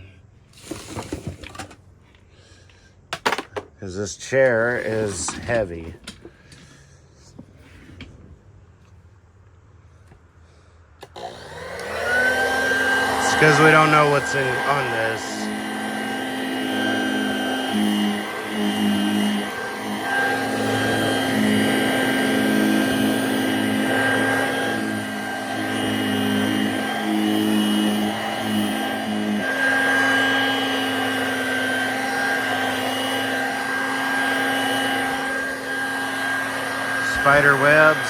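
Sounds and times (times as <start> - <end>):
handheld vacuum cleaner running: 0.6 - 1.8, 11.0 - 38.0.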